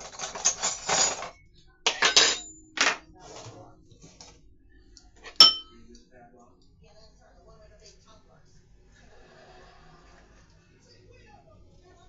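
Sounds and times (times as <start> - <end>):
utensil clinking against bowl: 0.0 - 3.0, 5.2 - 5.8.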